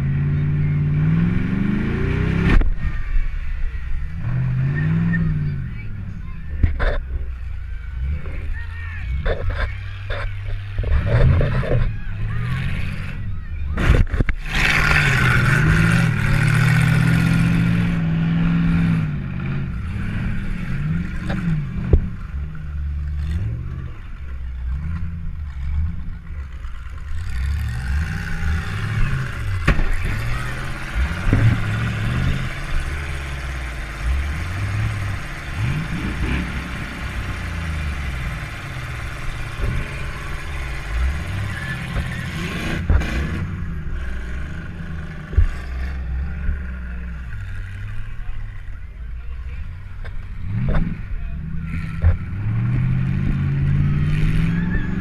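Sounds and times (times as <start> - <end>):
car engine revving: 0.0 - 55.0
sharp impact bangs: 28.8 - 43.6.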